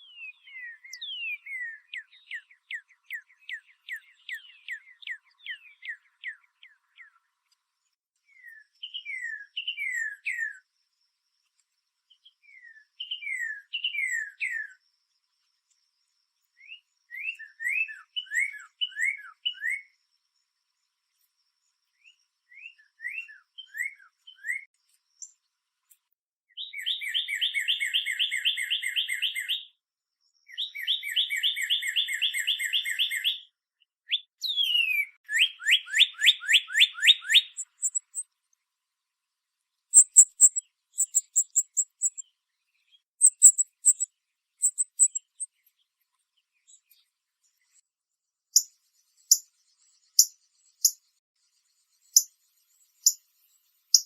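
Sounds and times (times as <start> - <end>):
cardinal whistled song: 0.0 - 6.8, 8.3 - 10.7, 12.4 - 14.8, 16.6 - 19.9, 26.6 - 29.7, 30.5 - 33.5, 34.1 - 38.3, 39.9 - 42.2, 43.2 - 45.5
bird rapid trills: 35.6 - 38.2, 40.0 - 42.2, 43.2 - 45.5.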